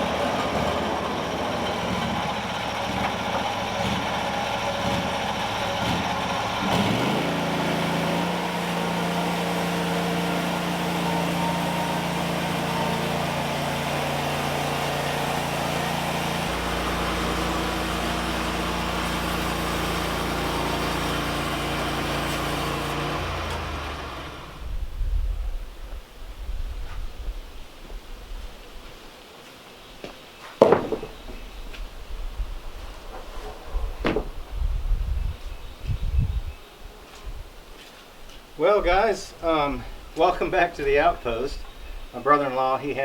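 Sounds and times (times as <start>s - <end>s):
engine running steadily: 0.0s - 25.5s.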